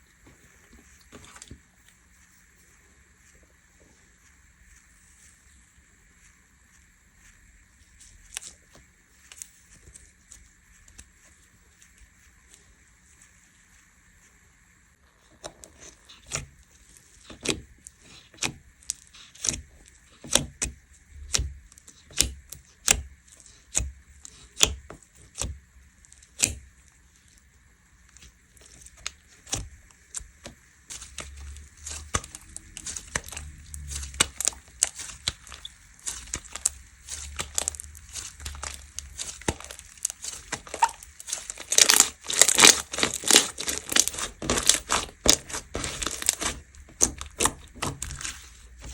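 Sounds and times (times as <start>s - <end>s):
slime popping and crackling: 15.4s - 27.4s, 28.0s - 48.9s.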